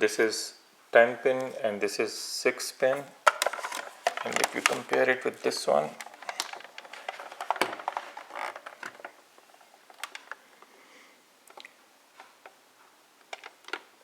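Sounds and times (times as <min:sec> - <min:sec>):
wires rustling: 0:02.8 - 0:10.8
plastic connectors clicking: 0:02.9 - 0:09.2.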